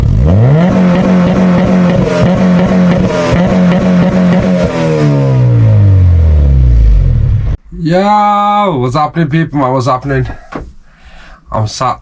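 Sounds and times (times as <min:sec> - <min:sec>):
car engine revving: 0:00.0 - 0:07.6.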